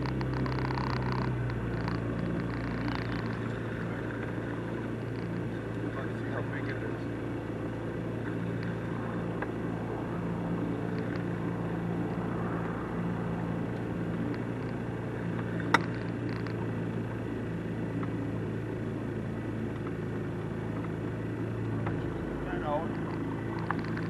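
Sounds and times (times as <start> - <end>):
boat motor humming: 0.0 - 24.0.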